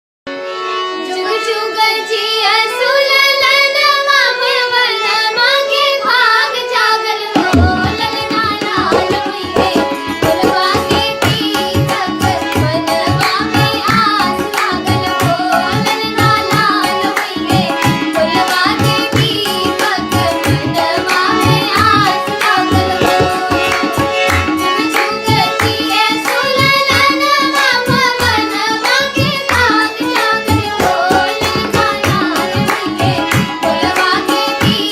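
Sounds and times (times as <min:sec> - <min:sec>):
children singing: 0:01.0 - 0:34.9
steady held accompaniment: 0:06.3 - 0:34.9
tabla drumming: 0:07.3 - 0:34.9.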